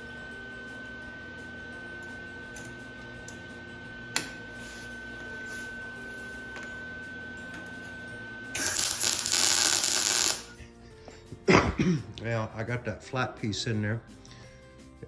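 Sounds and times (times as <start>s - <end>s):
welding crackle: 8.6s - 10.6s.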